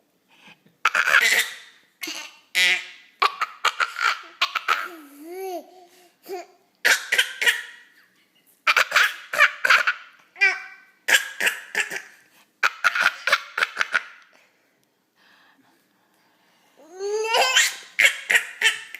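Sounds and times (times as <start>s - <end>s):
baby laughing: 0.8s - 7.9s, 8.6s - 14.3s, 17.0s - 18.9s
baby voiced sound: 16.8s - 18.9s.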